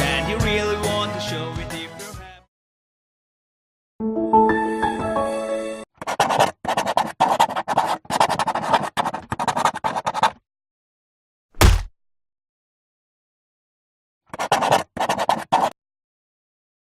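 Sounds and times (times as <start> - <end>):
scratchy scraping noise: 6.0 - 10.4, 14.3 - 15.8
dull thump: 11.6 - 11.9.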